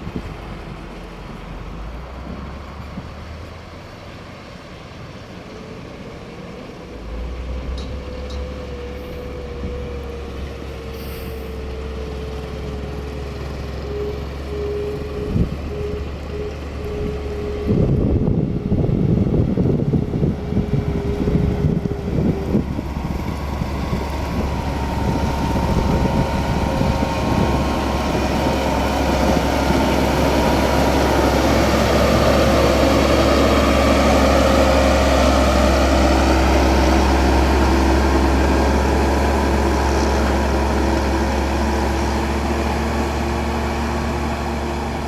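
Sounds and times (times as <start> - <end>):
diesel engine running: 0.0 - 45.0
steady whine: 14.2 - 42.0.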